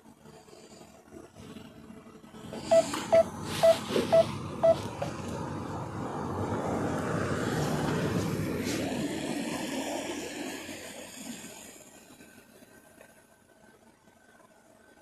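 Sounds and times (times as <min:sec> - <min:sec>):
drone whirring hum: 0:02.5 - 0:05.4
short electronic beeps: 0:02.6 - 0:05.1.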